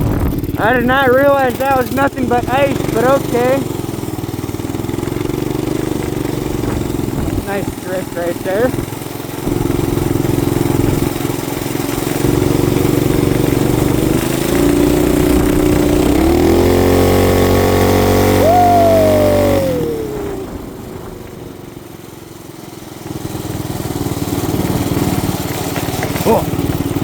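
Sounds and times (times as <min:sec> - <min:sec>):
motorcycle engine revving: 0:00.0 - 0:27.0
whine falling in pitch: 0:12.4 - 0:21.5.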